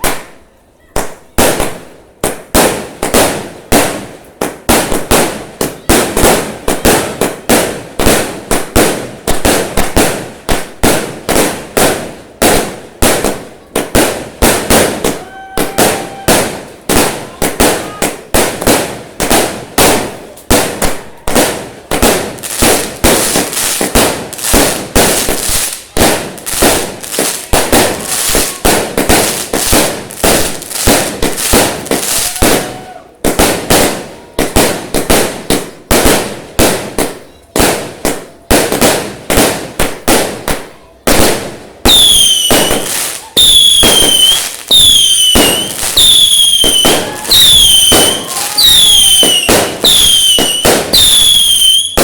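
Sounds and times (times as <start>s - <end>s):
fireworks banging: 0.0s - 52.0s.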